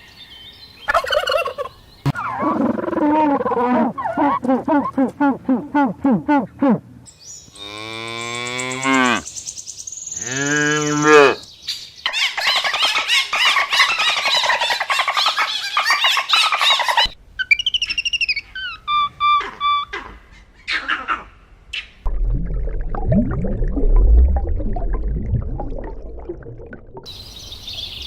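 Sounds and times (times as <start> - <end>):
small birds chirping: 27.1 - 28.0.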